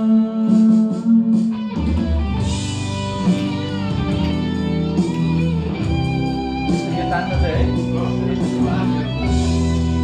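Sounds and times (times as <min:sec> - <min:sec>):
person singing: 0:00.0 - 0:01.9
guitar and bass backing track: 0:00.0 - 0:10.0.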